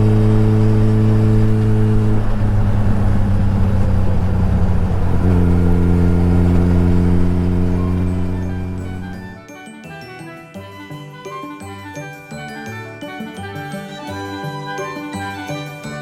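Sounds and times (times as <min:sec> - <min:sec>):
motorcycle engine running: 0:00.0 - 0:09.4.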